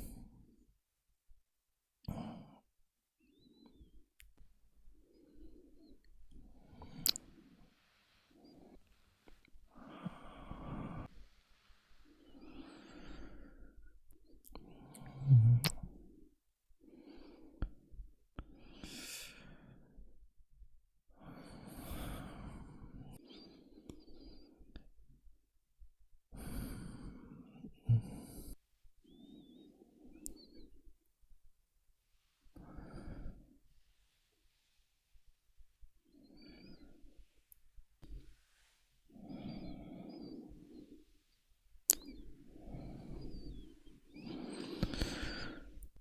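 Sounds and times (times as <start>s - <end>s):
man breathing slowly: 5.0s - 13.9s, 21.2s - 24.7s, 38.1s - 41.3s, 42.4s - 46.0s
mouth clicks: 6.8s - 7.4s, 14.4s - 15.9s, 41.9s - 42.3s
man breathing with whistle: 42.1s - 45.8s.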